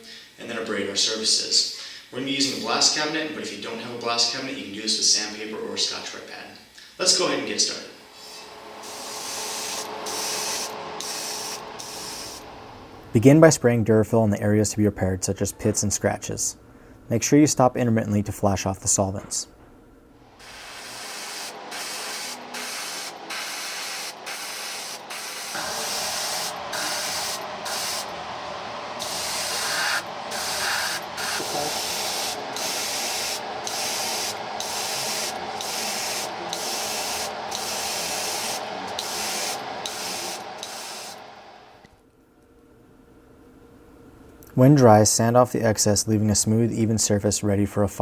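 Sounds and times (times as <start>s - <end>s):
spray gun hissing: 8.0s - 12.8s, 20.4s - 41.8s.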